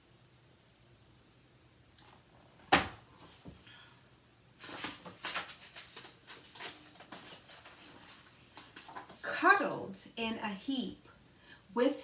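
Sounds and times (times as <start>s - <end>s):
paper page being turned: 4.6s - 9.3s.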